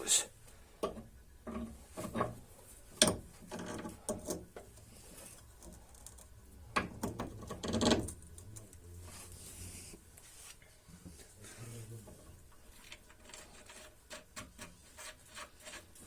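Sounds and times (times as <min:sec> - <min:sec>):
metallic clicks and knocks: 0:00.8 - 0:04.8, 0:05.6 - 0:08.8
tools scraping metal parts: 0:00.8 - 0:08.7, 0:12.7 - 0:16.0.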